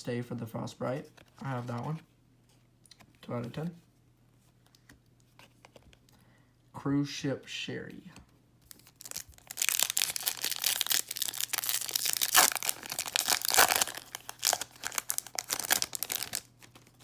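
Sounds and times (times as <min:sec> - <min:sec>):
wrapper crinkling and tearing: 0:08.7 - 0:17.0.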